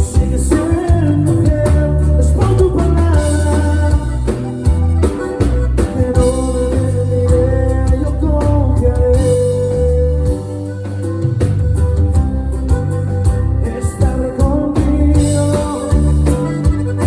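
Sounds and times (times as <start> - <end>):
drum kit hits: 0.0 - 17.0
electric guitar: 0.0 - 17.0
heavy electric bass line: 0.0 - 17.0.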